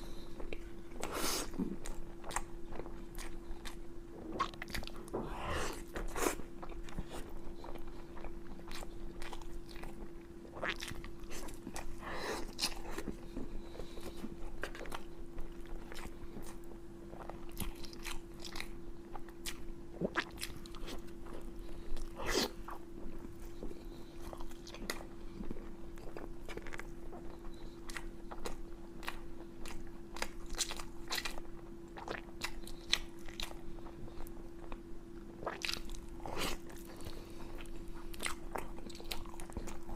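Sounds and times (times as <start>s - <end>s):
person chewing crunchy meat: 0.0s - 39.9s
steady hum: 0.0s - 39.9s.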